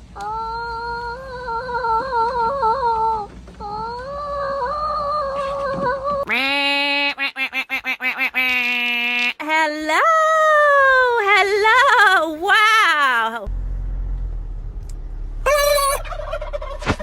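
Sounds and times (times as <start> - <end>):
wavering vocal sounds: 0.1 - 6.3, 15.5 - 16.0.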